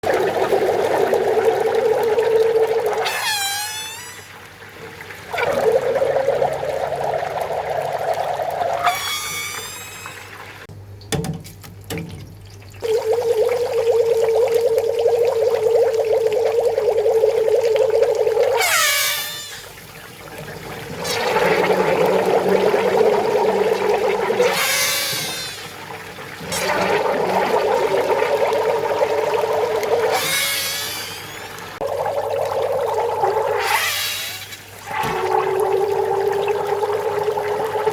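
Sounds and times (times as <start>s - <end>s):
high squeals sliding down: 3.0s - 4.4s, 8.8s - 10.4s, 18.6s - 19.7s, 24.4s - 25.7s, 30.0s - 31.6s
buzzing steam whine: 8.8s - 10.4s, 21.4s - 25.8s.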